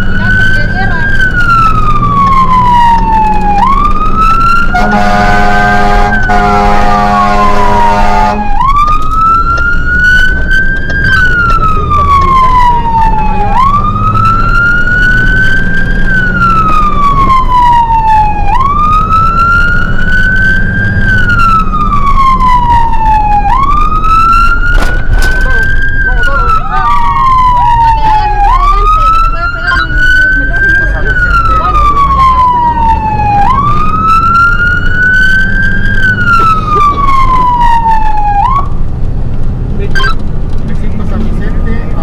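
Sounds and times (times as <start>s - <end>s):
engine running: 0.0s - 42.0s
fire engine siren wailing: 0.0s - 42.0s
horn blaring: 4.6s - 8.7s.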